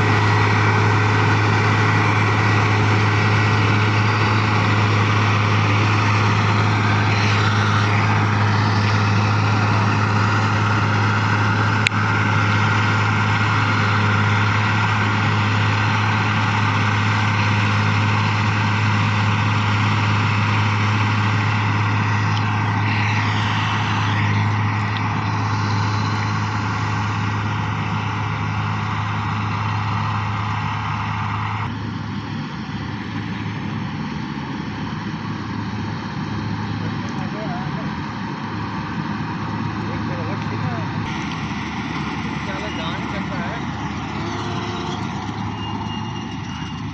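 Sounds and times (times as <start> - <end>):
combine harvester running: 0.0 - 46.9.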